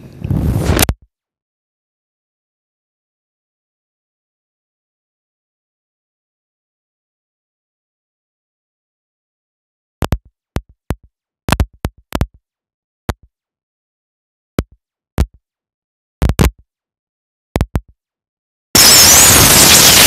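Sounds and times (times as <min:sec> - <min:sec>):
loud static hiss: 0:18.8 - 0:20.0.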